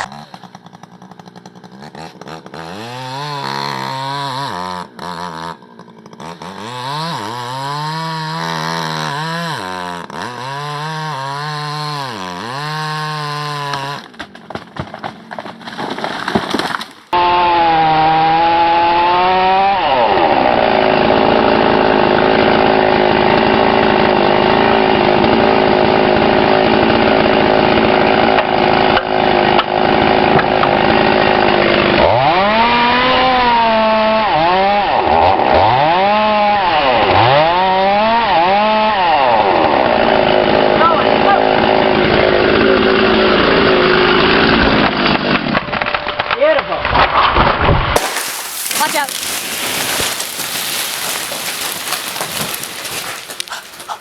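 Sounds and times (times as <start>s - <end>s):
chainsaw revving: 0.0s - 14.1s, 48.0s - 54.0s
chainsaw cutting wood: 0.0s - 38.8s, 48.0s - 54.0s.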